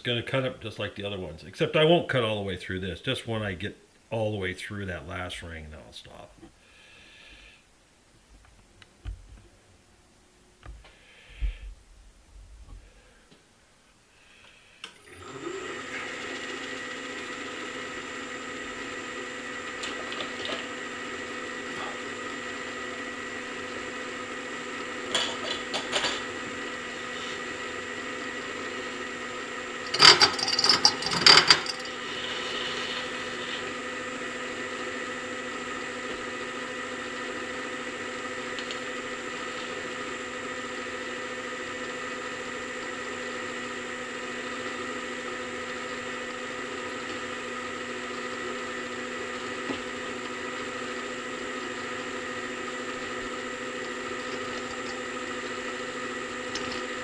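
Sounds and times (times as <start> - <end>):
clattering bursts: 29.9 - 32.0
machine tool cutting steel: 29.9 - 32.0.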